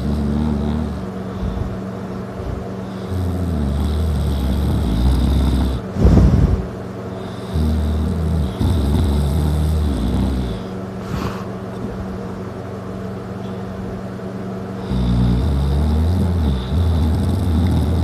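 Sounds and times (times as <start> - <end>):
man snoring loudly: 0.0 - 1.6, 2.8 - 6.4, 7.2 - 10.7, 14.8 - 18.0
breathing: 0.0 - 3.4, 4.4 - 8.8, 10.1 - 11.6.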